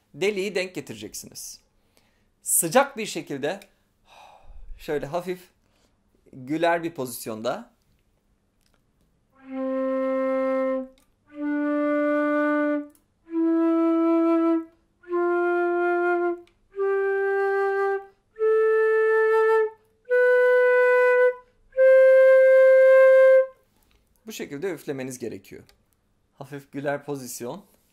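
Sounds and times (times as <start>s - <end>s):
flute playing ascending scale: 9.4s - 23.6s.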